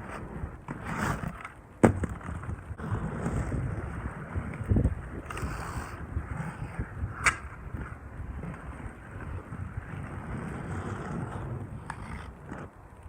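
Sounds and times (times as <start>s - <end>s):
inline skate wheels rolling: 0.0s - 13.0s
wind on microphone: 2.3s - 12.7s.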